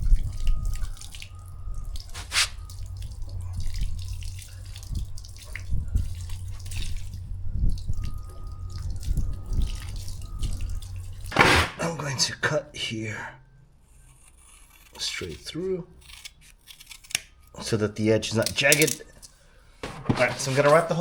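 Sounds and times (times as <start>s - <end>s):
steady low hum: 0.0s - 16.2s.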